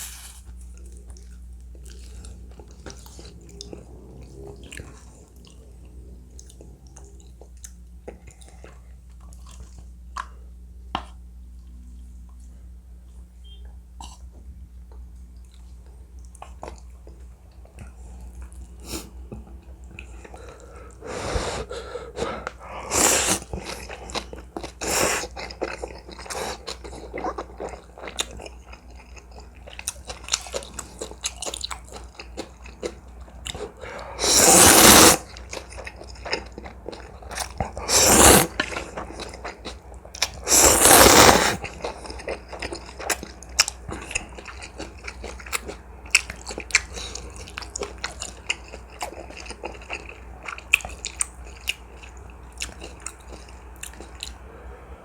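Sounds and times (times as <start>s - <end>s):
noodles being slurped: 0.0s - 0.5s, 22.8s - 26.8s, 33.5s - 36.0s, 37.3s - 43.2s
wet chewing with crisp crunches: 0.0s - 10.4s, 22.4s - 54.5s.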